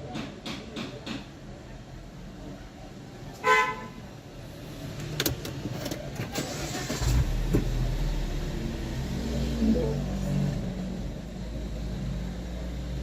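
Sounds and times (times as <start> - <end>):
car engine starting and idling: 4.4 - 13.0.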